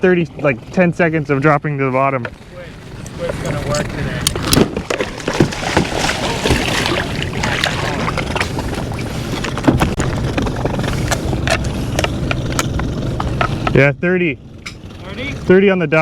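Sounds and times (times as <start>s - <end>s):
water noise: 0.0s - 16.0s
wind: 0.0s - 16.0s
gear knocking on hull: 0.2s - 16.0s.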